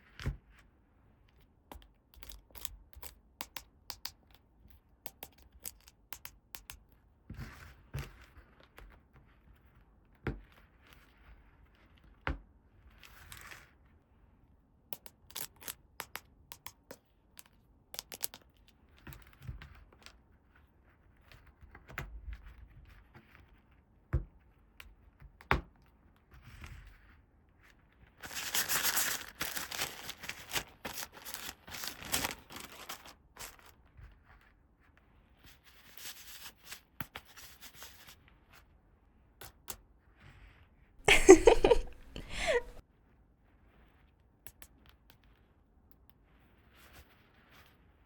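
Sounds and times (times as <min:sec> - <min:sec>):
small plastic clicks and taps: 0:01.7 - 0:06.9, 0:15.0 - 0:18.7
packaging tearing and crinkling: 0:28.2 - 0:33.7.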